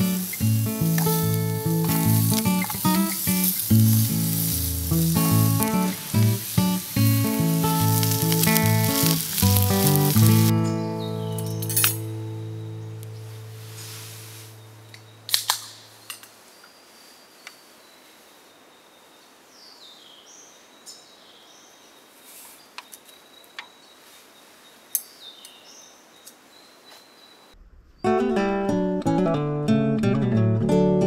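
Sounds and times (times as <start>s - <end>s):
campfire crackling and popping: 0.0s - 10.6s, 13.0s - 16.3s
faint high insect drone: 0.0s - 10.6s
bird chirps: 0.0s - 13.5s, 14.4s - 28.2s
strummed acoustic guitar: 0.0s - 14.3s, 28.1s - 31.0s
background music: 0.0s - 14.4s.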